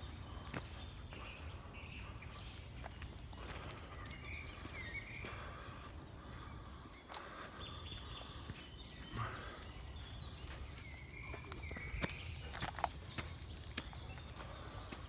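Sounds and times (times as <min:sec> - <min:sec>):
birds singing and chirping: 0:00.0 - 0:15.0.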